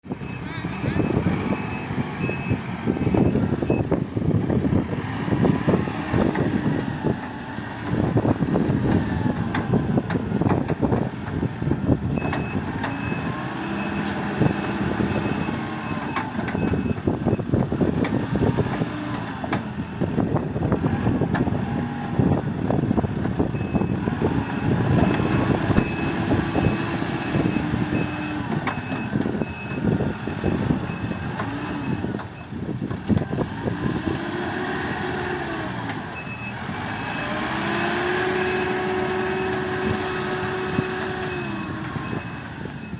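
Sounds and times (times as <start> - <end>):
heavy machinery diesel rumble: 0.0 - 42.9
reversing alarm beeping: 0.2 - 3.9, 23.5 - 32.5, 41.3 - 42.9
machinery clanks and knocks: 8.7 - 13.4.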